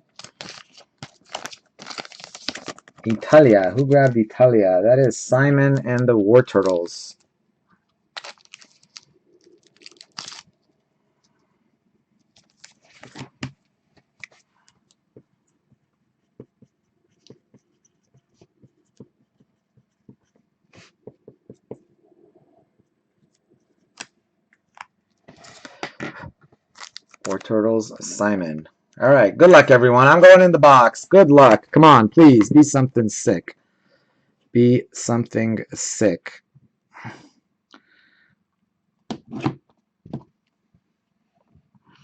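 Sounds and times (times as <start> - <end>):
plastic packaging rustling: 0.0 - 4.0, 8.1 - 10.8, 12.3 - 15.0, 26.6 - 27.5
trading cards rustling: 0.1 - 4.2, 5.7 - 7.2, 8.2 - 10.6, 26.7 - 27.5
short scrapes and taps: 16.4 - 21.8.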